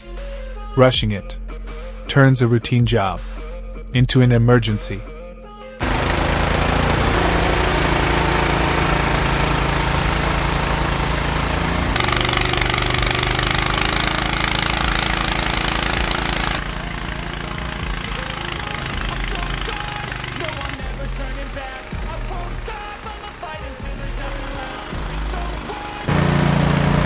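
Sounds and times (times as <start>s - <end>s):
engine running: 5.8s - 27.0s
harsh rattling: 5.8s - 27.0s.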